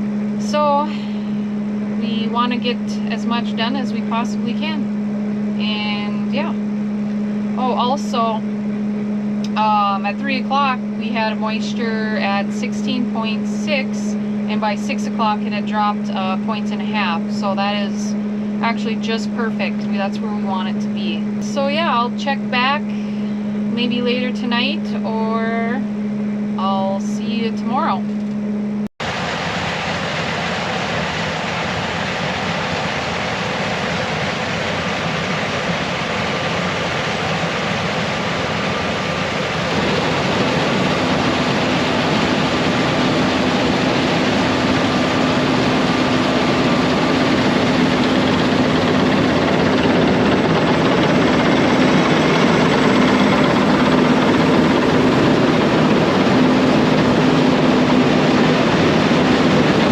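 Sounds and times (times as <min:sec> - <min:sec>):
low engine note: 0:00.0 - 0:59.9
heavy farm machinery running: 0:29.0 - 0:59.9.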